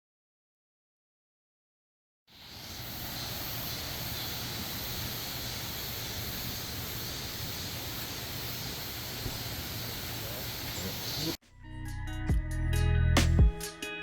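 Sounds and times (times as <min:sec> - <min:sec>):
mountain stream rushing: 0:02.3 - 0:11.3.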